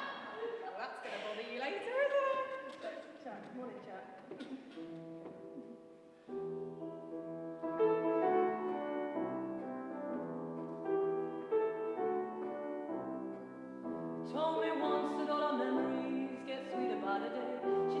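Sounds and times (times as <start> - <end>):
slow acoustic piano chords: 4.4 - 18.0.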